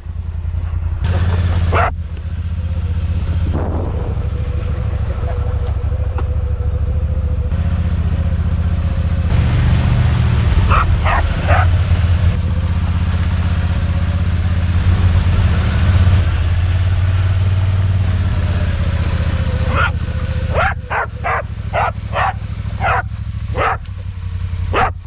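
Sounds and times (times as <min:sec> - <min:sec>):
engine running steadily: 0:00.0 - 0:25.0
dog barking: 0:01.6 - 0:02.0, 0:10.6 - 0:11.8, 0:19.5 - 0:23.9, 0:24.7 - 0:25.0.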